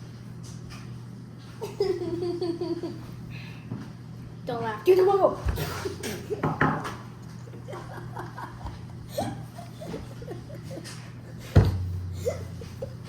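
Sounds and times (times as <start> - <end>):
steady low hum: 0.0 - 13.0
people stifling giggles: 7.5 - 11.5, 12.2 - 13.0.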